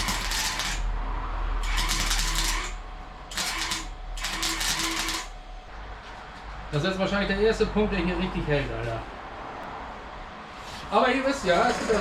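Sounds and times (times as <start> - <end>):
welding arc crackling: 0.0 - 1.0, 1.6 - 5.4.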